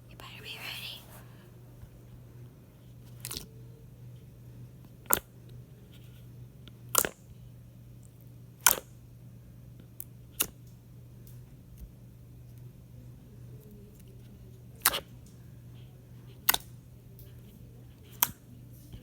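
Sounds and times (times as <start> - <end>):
faint low hum: 0.0 - 19.0
slime popping clicks: 8.6 - 8.8.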